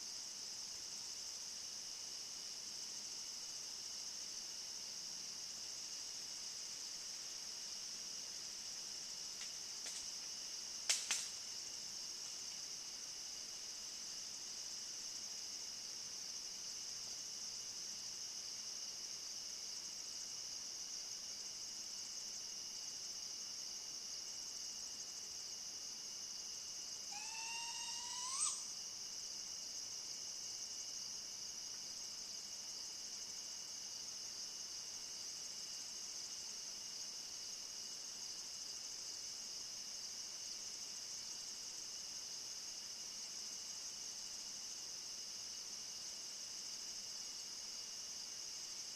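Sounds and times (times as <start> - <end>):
high-pitched insect chorus: 0.0 - 48.9
night animal call rising in pitch: 27.1 - 28.7.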